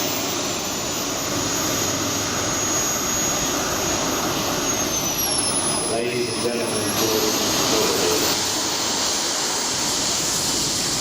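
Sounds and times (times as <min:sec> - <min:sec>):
jet turbine whining: 0:00.0 - 0:11.0
rushing exhaust noise: 0:00.0 - 0:11.0.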